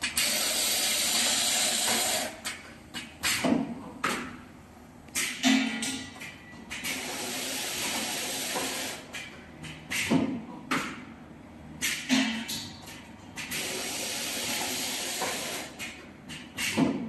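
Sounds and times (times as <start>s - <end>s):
sharp mechanical clunks: 5.1s - 7.0s, 11.8s - 13.6s.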